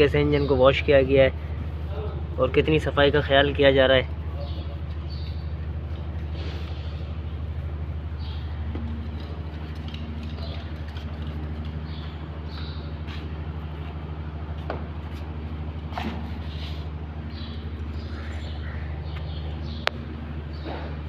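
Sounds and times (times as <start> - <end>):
birds chirping: 0.0 - 21.0
low mechanical drone: 0.0 - 21.0.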